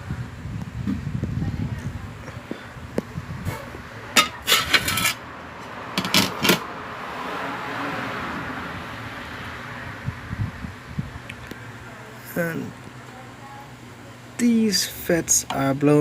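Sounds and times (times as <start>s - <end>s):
metal tools clinking: 4.2s - 5.2s.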